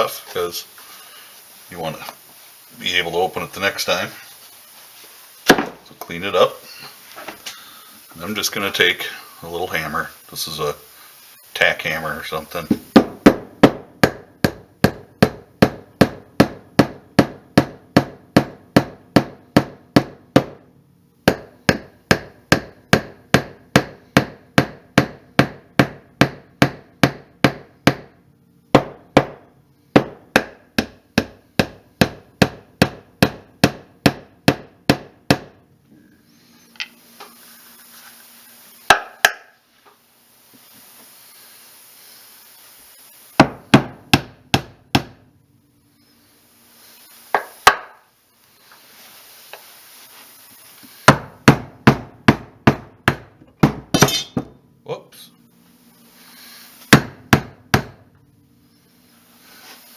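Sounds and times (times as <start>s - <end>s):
faint steady hiss: 0.0s - 59.9s
tack hammer tapping: 21.2s - 28.1s, 30.0s - 35.6s.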